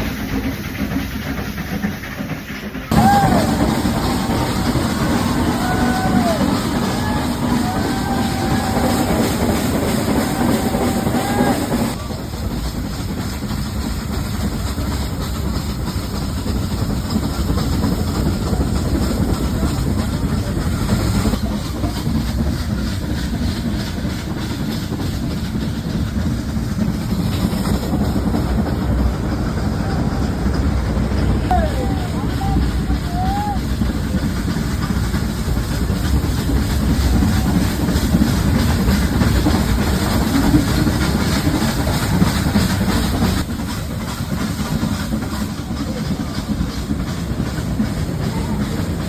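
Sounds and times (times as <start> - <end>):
train coaches rumbling on track: 0.0 - 49.0.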